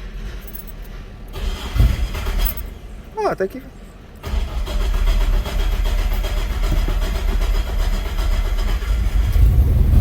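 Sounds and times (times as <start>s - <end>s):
starter motor cranking engine: 1.3s - 2.8s, 4.2s - 10.0s.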